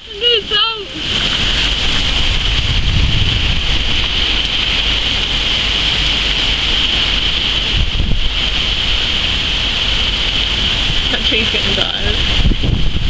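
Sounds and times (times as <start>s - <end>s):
heavy rain hiss: 0.0s - 13.0s
wind buffeting microphone: 0.0s - 13.0s.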